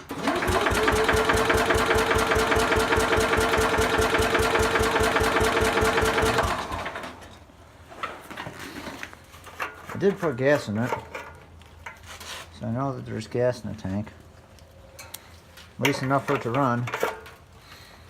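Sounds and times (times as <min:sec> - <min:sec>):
engine cranking on starter: 0:00.0 - 0:07.3.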